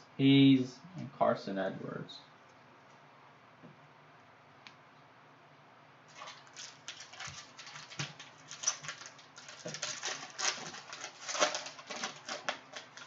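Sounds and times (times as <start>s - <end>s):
card pack wrapper crinkling: 6.1s - 13.0s.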